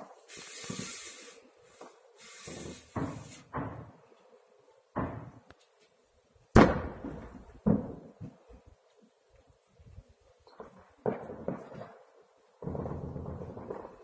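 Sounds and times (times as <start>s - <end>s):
rushing hiss: 0.0s - 3.5s
artillery explosions booming: 6.5s - 8.3s, 12.6s - 14.0s.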